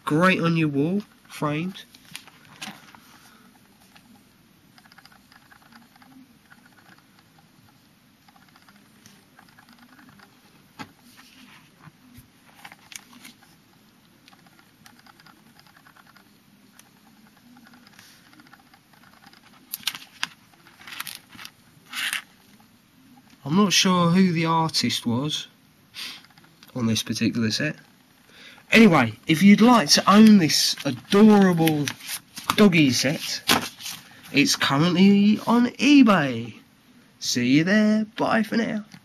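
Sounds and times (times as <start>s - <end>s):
cards clicking and rustling: 1.9s - 3.3s, 12.5s - 13.5s, 17.7s - 22.3s, 28.8s - 34.6s.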